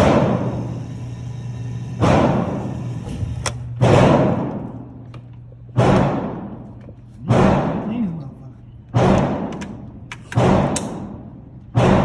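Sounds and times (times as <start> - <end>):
gunshots with echo: 7.2 - 7.9.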